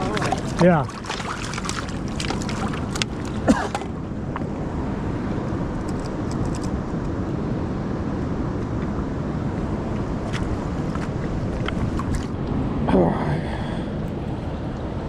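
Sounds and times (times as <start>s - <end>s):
flowing river water: 0.0s - 5.5s, 9.4s - 12.4s.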